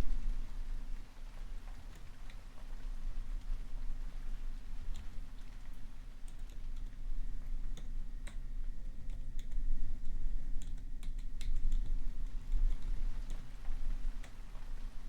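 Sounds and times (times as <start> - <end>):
rain: 0.0 - 8.4, 11.6 - 15.0.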